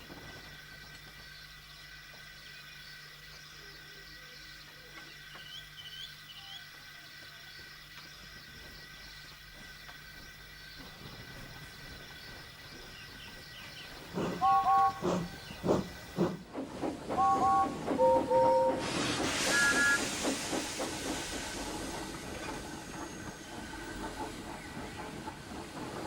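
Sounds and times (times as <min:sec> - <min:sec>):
steam locomotive chuffs: 0:08.2 - 0:26.0
steam hissing: 0:10.1 - 0:26.0
train whistle toots: 0:14.2 - 0:15.4, 0:17.1 - 0:20.1.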